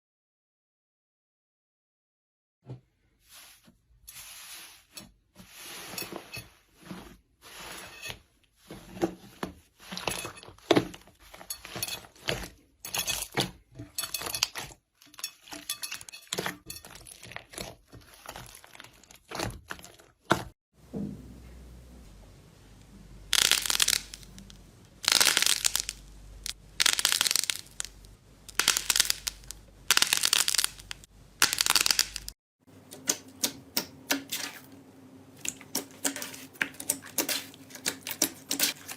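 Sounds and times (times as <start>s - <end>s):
slime squishing: 16.3s - 20.5s, 35.4s - 38.9s
low hum: 20.8s - 23.4s
slime crackling and popping: 23.3s - 32.3s.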